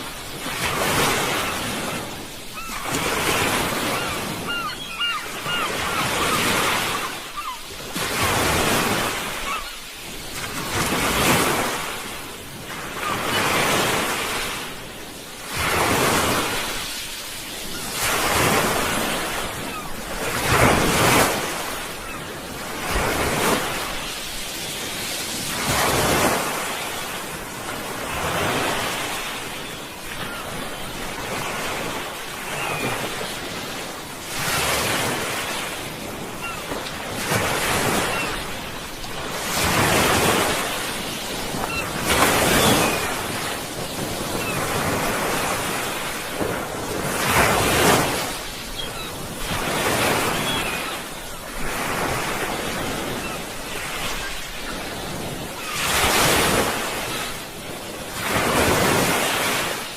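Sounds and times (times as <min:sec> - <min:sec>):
sea waves breaking: 0:00.0 - 0:59.9.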